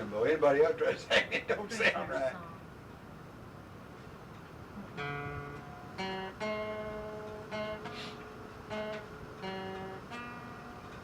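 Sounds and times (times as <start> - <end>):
cassette tape hiss: 0.0 - 11.0
acoustic guitar strumming chords: 4.8 - 11.0.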